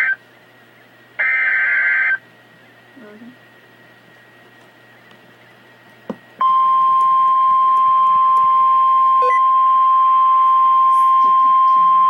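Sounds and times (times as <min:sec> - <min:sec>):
steady high warning tone: 0:00.0 - 0:00.2, 0:01.2 - 0:02.2, 0:06.4 - 0:12.0.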